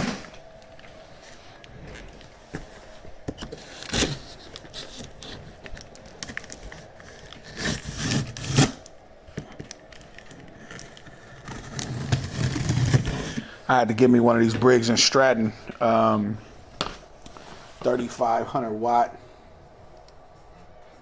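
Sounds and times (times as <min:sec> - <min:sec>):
scraping and rustling: 0:09.4 - 0:13.6.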